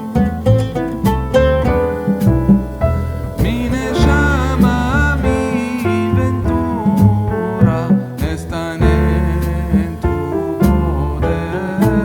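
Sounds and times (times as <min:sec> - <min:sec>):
guitar music with bending melody: 0:00.0 - 0:08.1.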